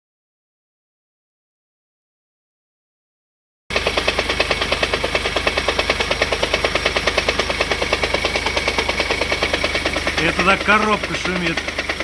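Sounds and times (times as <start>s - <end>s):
gearbox knocking rattle: 3.7s - 12.0s.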